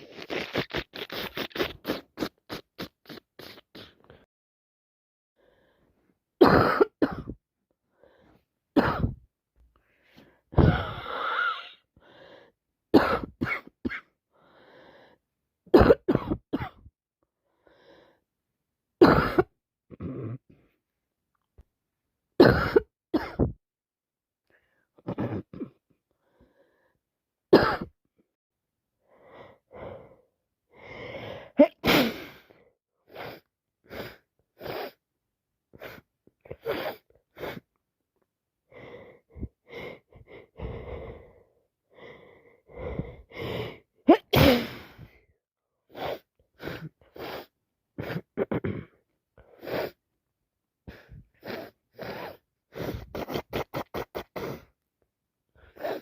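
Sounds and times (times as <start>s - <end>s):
sniffing through congested nose: 0.0s - 4.2s, 31.0s - 35.0s, 36.6s - 37.7s, 45.9s - 48.8s, 49.4s - 50.0s, 50.9s - 54.7s, 55.6s - 56.0s
woman sneezing: 44.1s - 45.0s.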